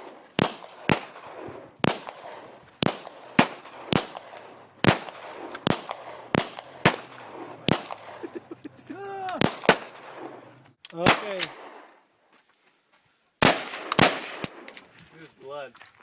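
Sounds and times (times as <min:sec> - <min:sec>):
semi-automatic gunshots: 0:00.0 - 0:08.4, 0:09.4 - 0:11.9, 0:13.4 - 0:14.7.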